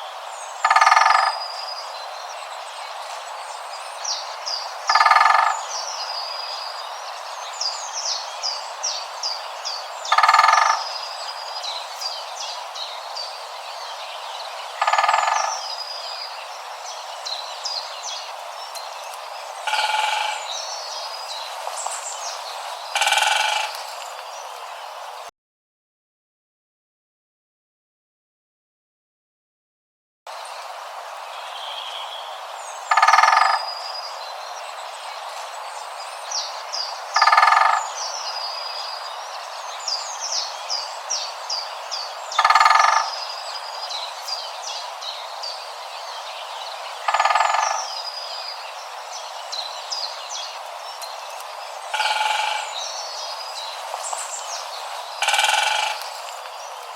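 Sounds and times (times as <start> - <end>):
small birds chirping: 0.0 - 25.3, 30.3 - 56.9
woodpecker drumming: 0.6 - 1.5, 4.8 - 5.7, 10.0 - 11.0, 14.7 - 15.8, 18.2 - 20.6, 21.6 - 24.3, 32.9 - 33.7, 37.2 - 38.0, 42.3 - 43.3, 47.0 - 48.0, 50.5 - 56.9.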